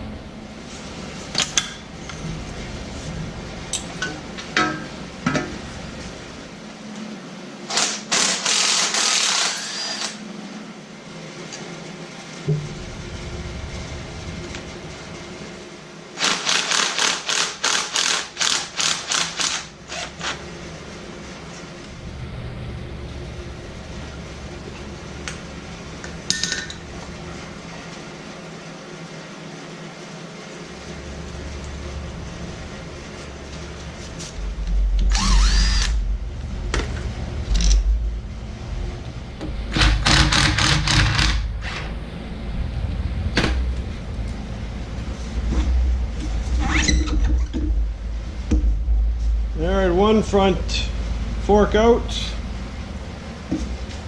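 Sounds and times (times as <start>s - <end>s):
low background hum: 0.0s - 54.0s
power tool running: 7.7s - 10.2s, 16.2s - 20.4s, 34.9s - 36.1s, 39.7s - 41.9s.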